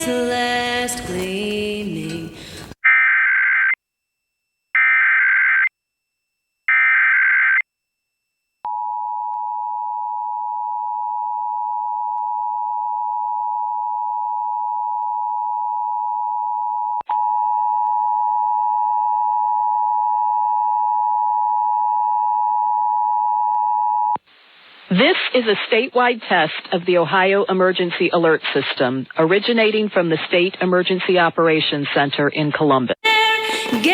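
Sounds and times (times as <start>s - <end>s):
screechy digital data tones: 6.7s - 7.6s.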